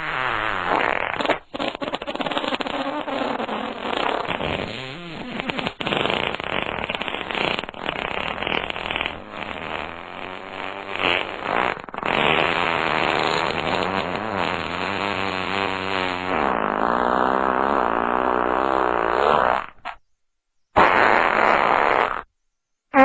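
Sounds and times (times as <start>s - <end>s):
fart sound effects: 0.0s - 20.0s, 20.8s - 22.3s.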